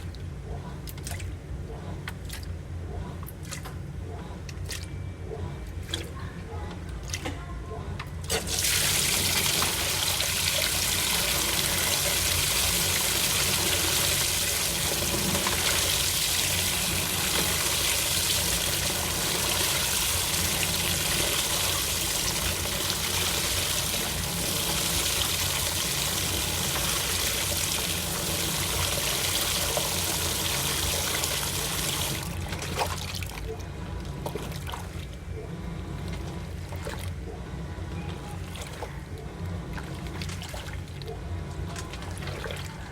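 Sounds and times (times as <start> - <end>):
water rushing into washing machine: 8.2 - 42.9.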